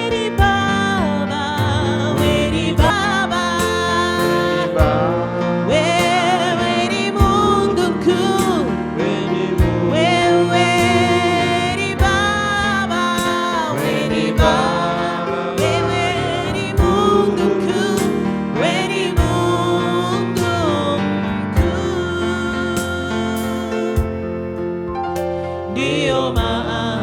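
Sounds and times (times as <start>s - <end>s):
person singing: 0.0s - 24.7s, 25.7s - 27.0s
band with bass: 0.0s - 27.0s
heavy beat: 2.2s - 5.2s, 7.2s - 7.5s, 9.6s - 10.0s, 10.7s - 12.4s, 13.2s - 17.2s, 19.2s - 19.6s, 21.6s - 21.8s, 22.8s - 24.3s.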